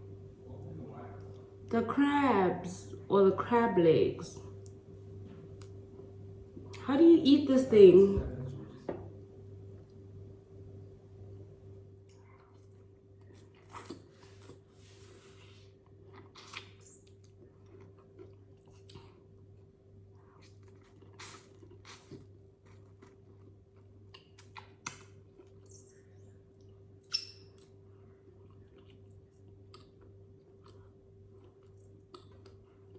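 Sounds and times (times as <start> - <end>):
chewing: 12.0 - 14.7, 15.3 - 32.9.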